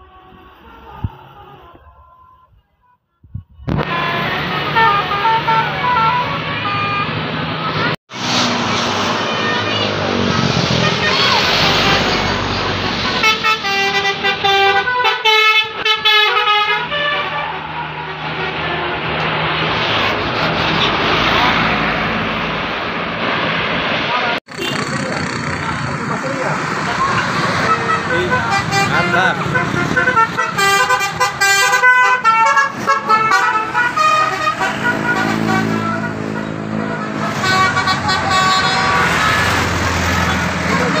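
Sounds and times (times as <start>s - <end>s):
road noise: 0.0s - 41.0s
musical air horn tooting: 3.5s - 7.1s, 10.8s - 19.2s, 27.6s - 39.7s.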